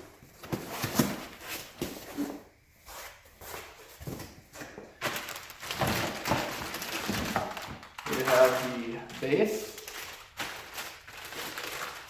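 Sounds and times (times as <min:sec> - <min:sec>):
packing material rustling: 0:05.0 - 0:12.0.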